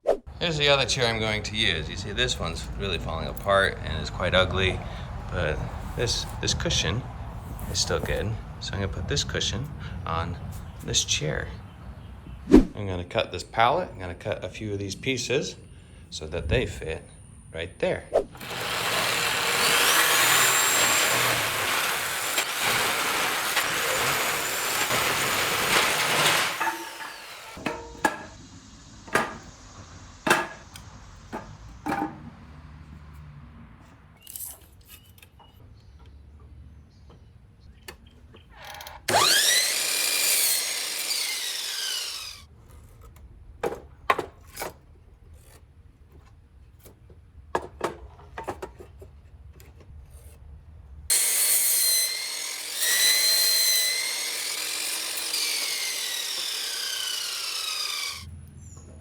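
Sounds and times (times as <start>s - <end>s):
power saw cutting wood: 18.4s - 28.4s, 29.0s - 29.6s, 30.2s - 31.6s, 38.9s - 42.5s, 51.1s - 58.3s
boards knocking and clattering: 19.8s - 28.4s, 29.1s - 29.5s, 30.3s - 30.7s, 31.3s - 32.4s.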